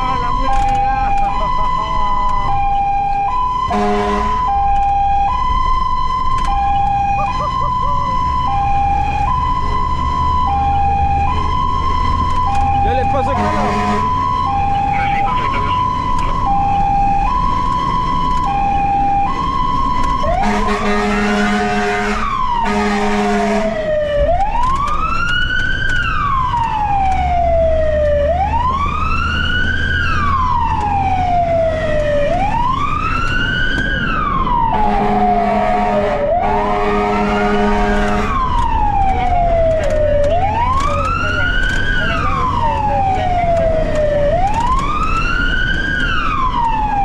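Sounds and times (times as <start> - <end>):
fire engine siren: 0.0 - 47.0
deep horn blasts: 3.6 - 4.6, 13.3 - 14.2, 20.3 - 24.0, 34.7 - 38.6.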